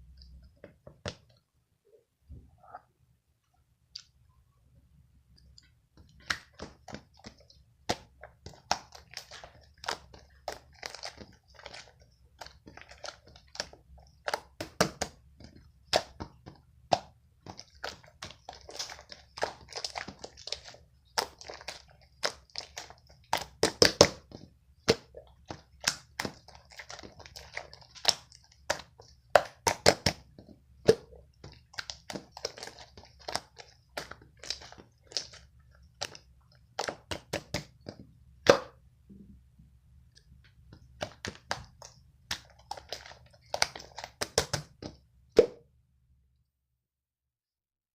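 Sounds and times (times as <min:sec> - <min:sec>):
slime clicking and popping: 0:05.4 - 0:38.8, 0:40.8 - 0:45.6.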